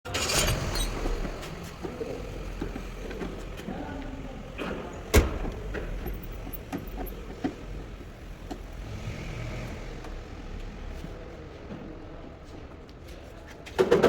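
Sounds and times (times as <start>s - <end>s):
low rumble of vehicles: 0.1s - 13.0s.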